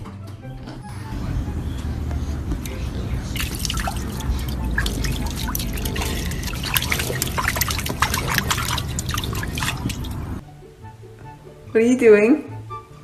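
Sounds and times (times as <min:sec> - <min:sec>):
water dripping and splashing: 0:01.2 - 0:10.4.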